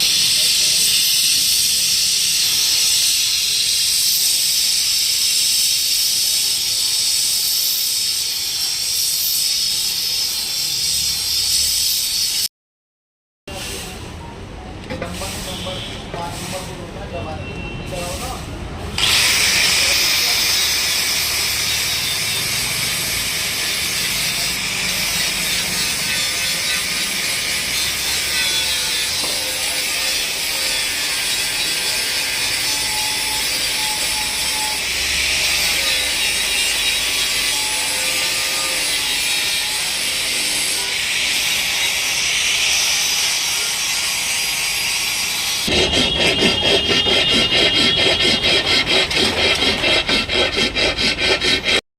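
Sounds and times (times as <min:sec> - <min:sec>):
power tool abrasive rubbing: 0:19.0 - 0:51.8.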